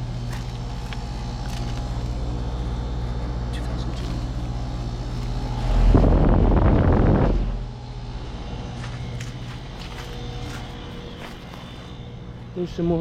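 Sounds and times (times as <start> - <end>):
air conditioner humming: 0.0 - 13.0
loud rushing noise: 5.5 - 7.8.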